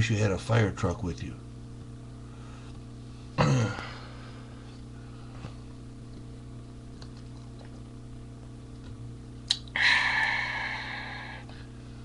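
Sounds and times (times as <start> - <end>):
low electrical hum: 0.0 - 12.0
man's throaty vocal sound: 3.4 - 4.0.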